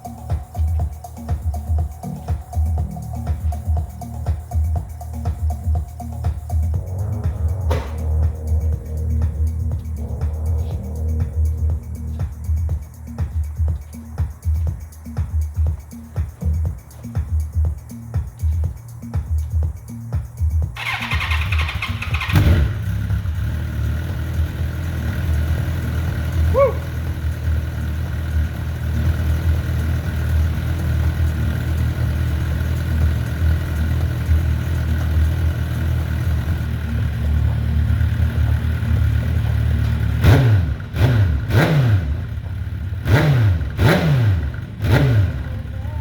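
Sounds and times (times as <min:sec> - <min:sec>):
motorcycle engine idling: 0:00.0 - 0:46.0
motorcycle throttle blips: 0:05.3 - 0:12.6, 0:20.8 - 0:46.0
motorcycle starter cranking: 0:20.8 - 0:45.5.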